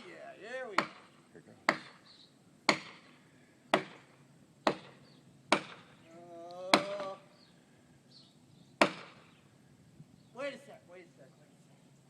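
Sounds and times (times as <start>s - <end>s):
wedge struck with hammer blows: 0.7s - 2.0s, 2.6s - 5.9s, 6.7s - 7.2s, 8.8s - 9.3s.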